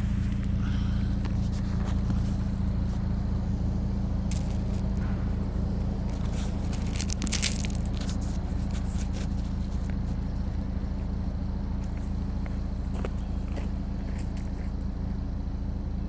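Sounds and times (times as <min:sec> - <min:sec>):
car engine idling: 0:00.0 - 0:16.0
crackling clicks: 0:04.3 - 0:10.7.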